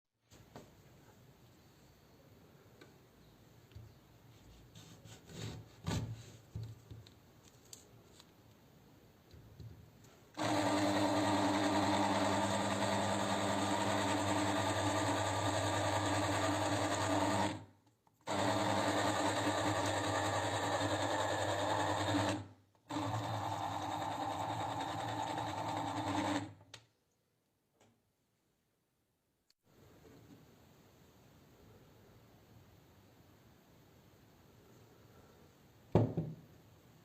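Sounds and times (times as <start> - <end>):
small electric motor running: 10.4 - 17.6.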